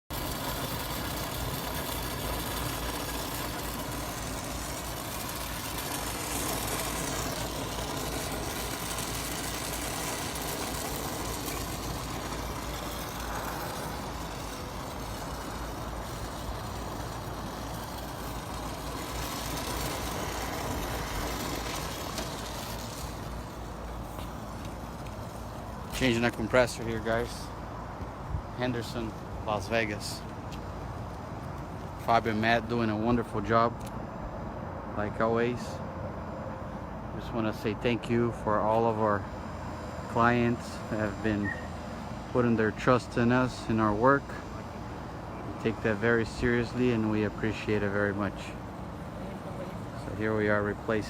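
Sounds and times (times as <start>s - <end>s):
machine motor running: 0.1s - 30.2s.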